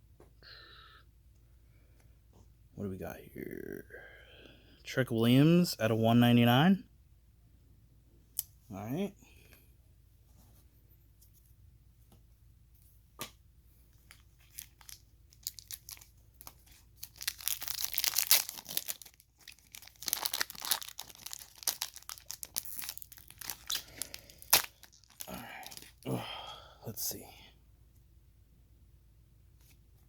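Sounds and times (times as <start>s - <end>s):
card pack wrapper tearing and crinkling: 14.0s - 26.0s.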